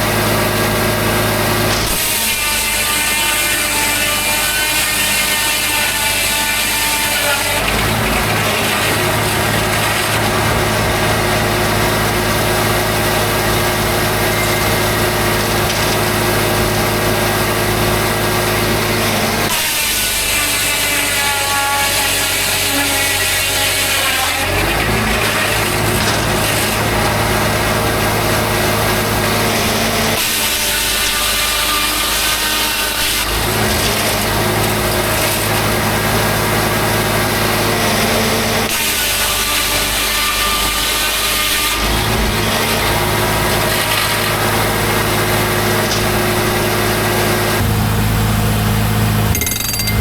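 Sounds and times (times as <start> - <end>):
saw blade cutting wood: 0.0 - 47.7
low drone of power unit: 41.7 - 50.0.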